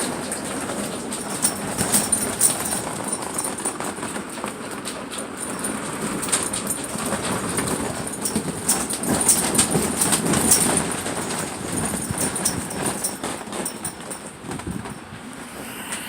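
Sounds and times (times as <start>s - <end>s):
knocks and rattles: 0.0s - 15.2s
wind buffeting microphone: 14.3s - 16.0s.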